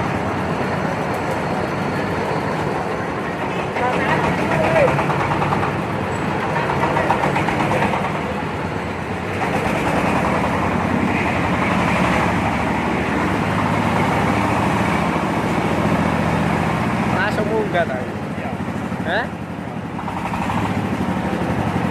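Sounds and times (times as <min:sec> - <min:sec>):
engine drone: 0:00.0 - 0:21.9.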